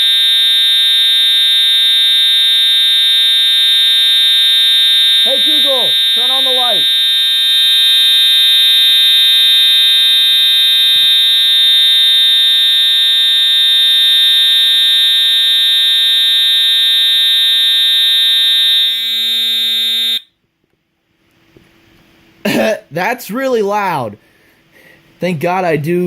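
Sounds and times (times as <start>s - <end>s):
fire alarm horn steady tone: 0.0s - 20.4s.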